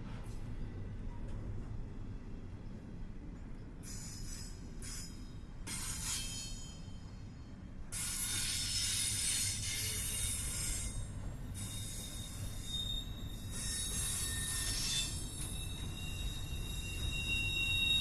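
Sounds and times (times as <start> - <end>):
low train rumble: 0.0 - 18.0
train wheels squealing on rails: 0.0 - 18.0.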